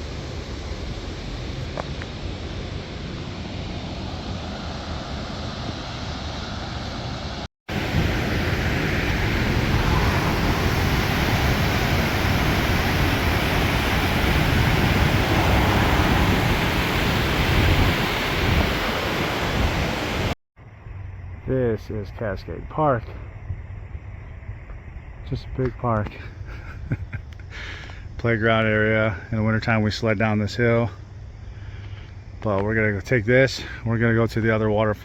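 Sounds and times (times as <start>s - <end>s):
waterfall roaring: 2.1s - 20.4s
wind buffeting microphone: 7.7s - 20.4s.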